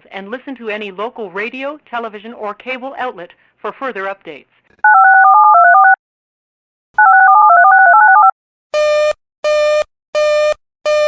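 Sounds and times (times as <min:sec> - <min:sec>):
touch-tone telephone tones: 0:04.9 - 0:06.0, 0:07.0 - 0:08.3.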